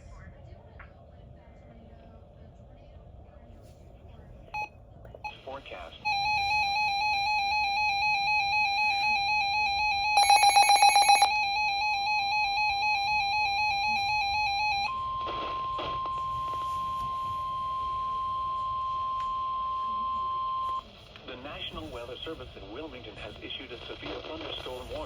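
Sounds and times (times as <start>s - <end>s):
steady single-pitch warning tone: 4.5s - 20.9s
warbling electronic alarm: 6.0s - 20.9s.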